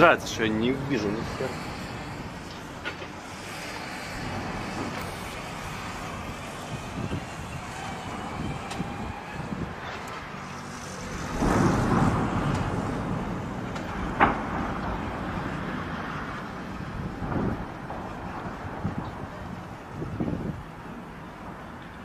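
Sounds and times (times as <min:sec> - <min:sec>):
wind noise on microphone: 0:00.0 - 0:22.0
sharp crack: 0:09.8 - 0:15.7
distant rumbling explosion: 0:11.0 - 0:19.4.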